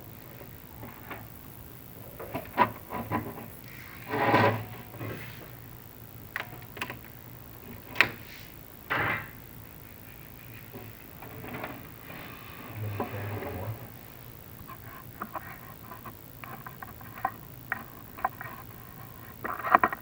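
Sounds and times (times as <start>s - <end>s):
steady low hum: 0.0s - 20.0s
rasping scrape: 10.5s - 17.4s.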